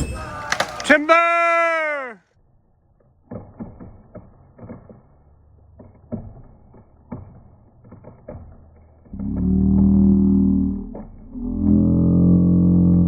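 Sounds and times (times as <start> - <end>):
sharp knocks and cracks: 0.0 - 1.1.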